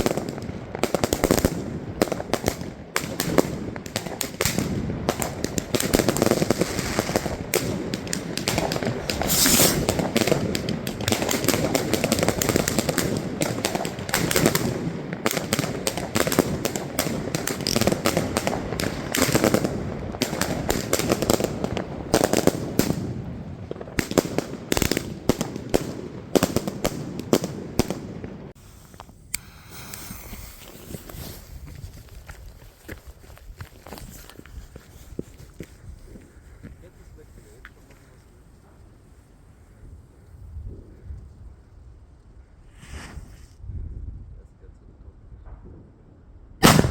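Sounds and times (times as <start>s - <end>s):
fireworks and firecrackers banging: 0.0s - 32.2s, 42.7s - 43.6s, 46.6s - 46.9s.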